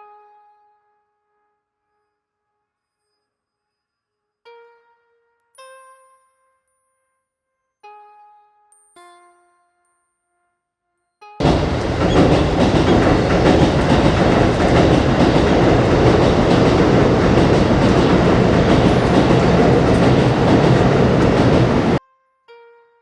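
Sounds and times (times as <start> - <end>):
train passing overhead: 11.4 - 22.0.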